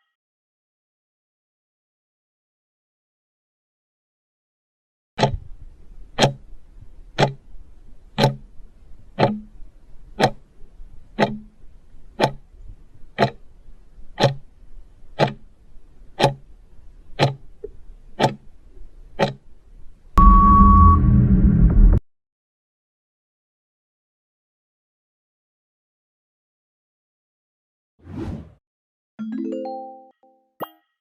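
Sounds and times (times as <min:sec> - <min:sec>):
clock ticking: 0:05.2 - 0:19.6.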